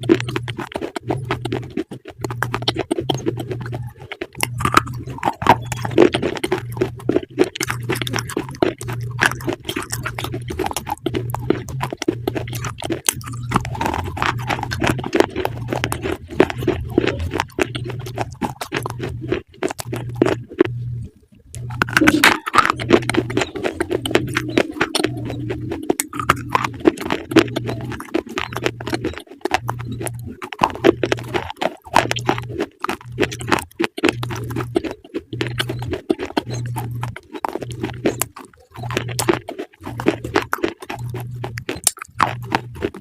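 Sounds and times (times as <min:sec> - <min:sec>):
crunchy chewing: 0:00.0 - 0:43.0.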